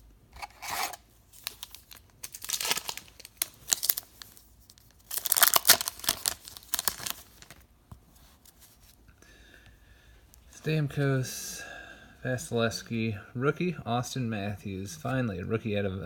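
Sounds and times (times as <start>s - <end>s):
wrapper tearing and crinkling: 0.4s - 7.6s.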